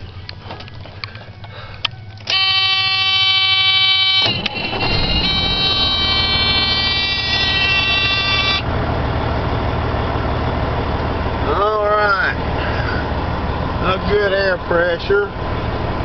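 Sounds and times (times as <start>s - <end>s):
train air horn: 2.3s - 8.6s.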